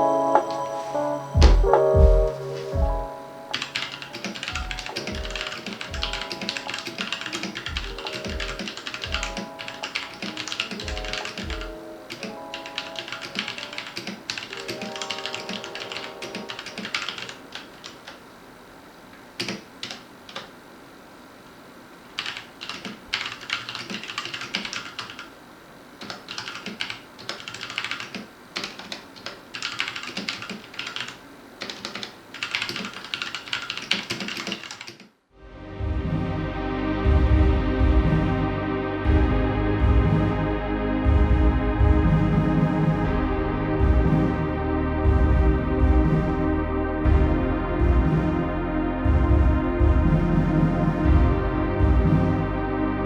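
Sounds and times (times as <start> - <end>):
background music with bass beat: 0.3 - 3.2, 35.5 - 53.0
mechanical keyboard typing: 3.5 - 18.2, 19.4 - 20.5, 22.2 - 25.3, 26.0 - 35.1.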